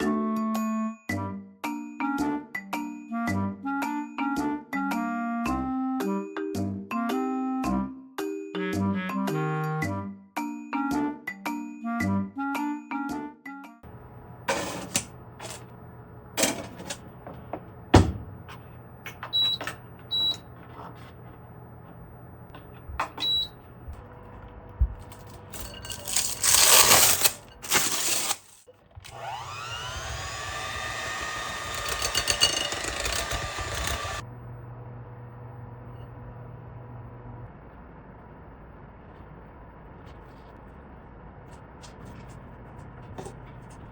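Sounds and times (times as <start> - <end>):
kitchen appliance motor running: 13.9 - 23.8, 25.1 - 34.2
utensils and containers clicking: 14.5 - 15.7, 25.0 - 29.3, 29.9 - 34.2.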